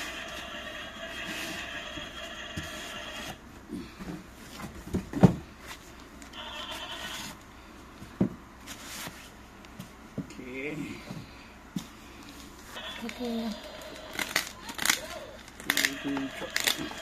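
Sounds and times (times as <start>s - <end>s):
packaging rubbing and scraping: 12.8s - 17.0s.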